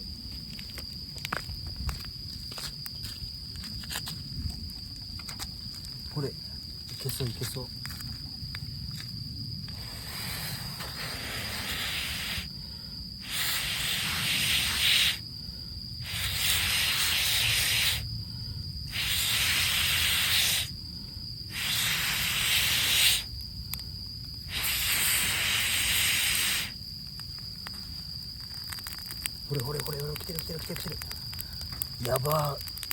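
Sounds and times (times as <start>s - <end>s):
person blowing on fire: 9.7s - 15.2s, 16.0s - 18.1s, 18.9s - 20.8s, 21.5s - 23.3s, 24.4s - 26.8s.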